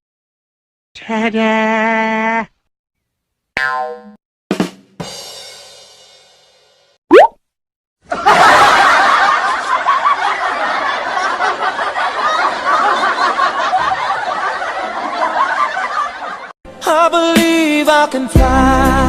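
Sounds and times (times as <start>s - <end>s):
crowd laughing: 8.0s - 16.6s.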